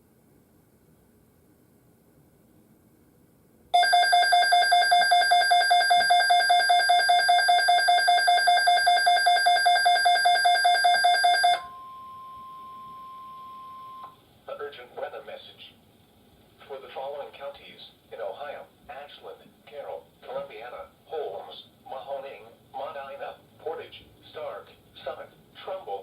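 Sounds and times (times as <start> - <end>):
rapidly pulsing electronic beep: 3.8 - 11.8
steady warning alarm tone: 3.8 - 14.2.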